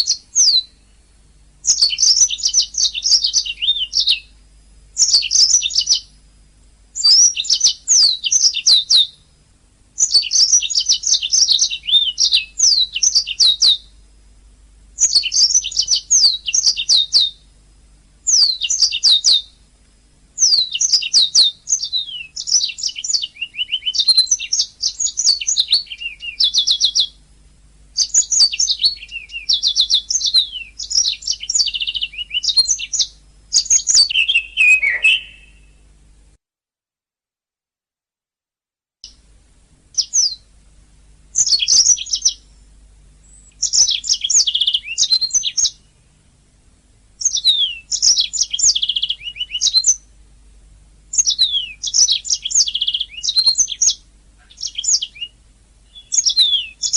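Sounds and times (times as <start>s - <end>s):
canary singing trills: 0.0s - 4.4s, 5.0s - 6.2s, 6.9s - 9.3s, 10.0s - 14.0s, 15.0s - 17.6s, 18.2s - 19.6s, 20.4s - 27.2s, 28.0s - 35.8s, 39.9s - 40.5s, 41.3s - 42.6s, 43.2s - 46.0s, 47.2s - 50.1s, 51.1s - 56.9s.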